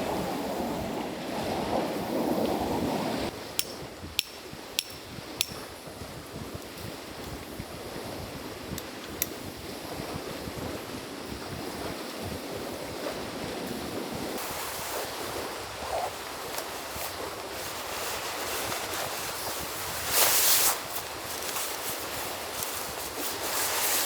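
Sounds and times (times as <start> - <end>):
waves washing against shore: 0.0 - 3.5
strong wind on microphone: 0.0 - 24.0.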